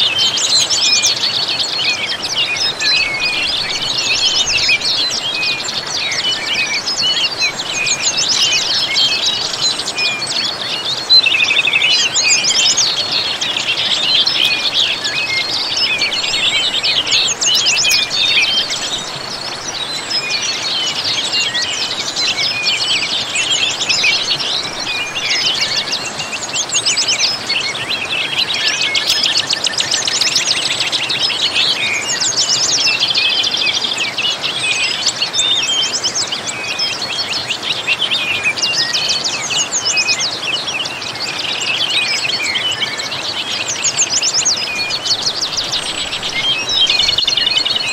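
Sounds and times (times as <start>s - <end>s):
songbirds chirping: 0.0s - 47.9s
waterfall rushing: 1.2s - 11.0s.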